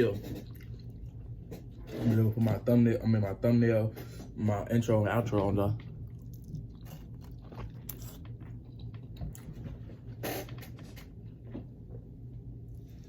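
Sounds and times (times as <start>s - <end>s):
person chewing with wet mouth noises: 0.0s - 1.9s, 5.2s - 11.4s.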